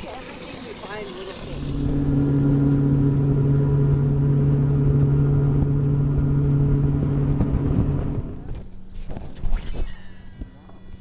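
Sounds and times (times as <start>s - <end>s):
outboard motor humming: 1.2s - 8.9s.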